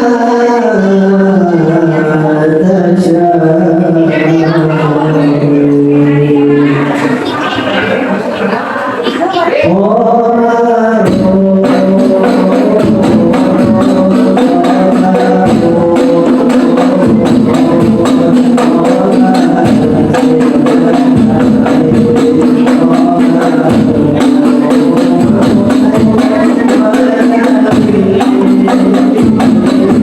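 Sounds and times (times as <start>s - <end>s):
frame drums struck in fast rhythm: 9.0s - 30.0s
deep bass drum beating: 11.0s - 30.0s.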